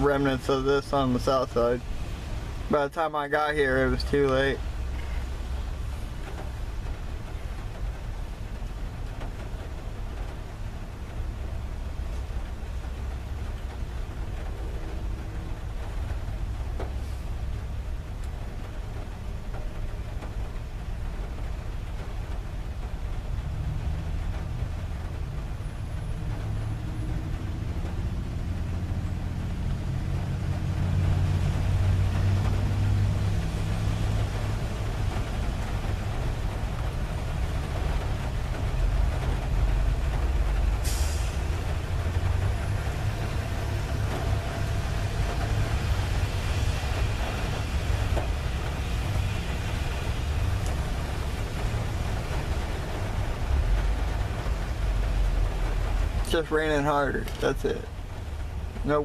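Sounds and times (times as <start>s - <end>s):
car engine and road rumble: 0.0s - 59.0s
tyres hissing on road: 0.0s - 59.0s
brief sharp hiss: 40.8s - 41.4s.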